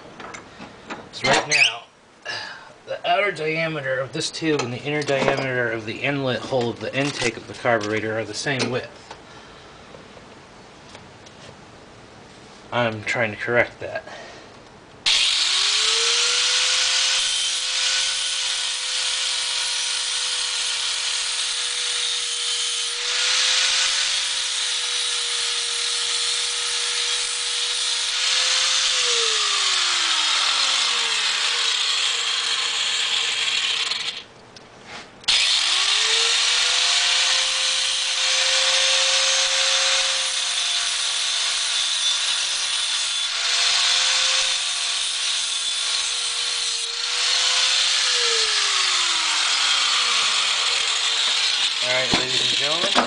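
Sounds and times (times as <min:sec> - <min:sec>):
electric grinder grinding a tube: 0:15.1 - 0:34.2, 0:35.3 - 0:53.0.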